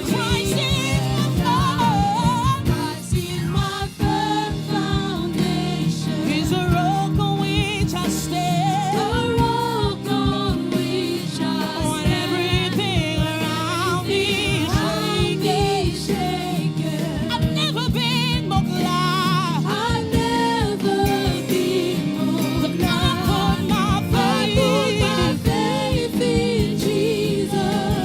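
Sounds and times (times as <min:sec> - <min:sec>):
band with bass and drums: 0:00.0 - 0:28.0
voices singing: 0:00.0 - 0:28.0.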